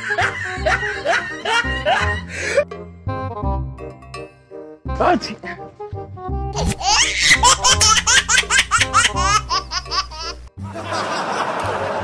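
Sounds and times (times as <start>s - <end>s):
background music: 0.0s - 12.0s
high-pitched laughter: 6.6s - 10.4s.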